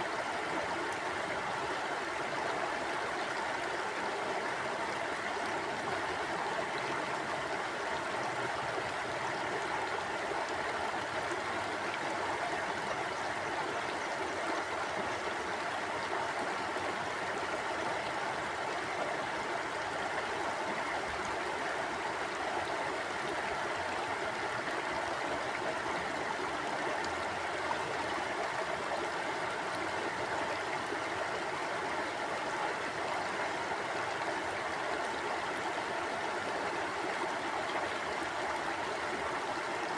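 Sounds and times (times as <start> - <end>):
river water flowing over stones: 0.0 - 39.9.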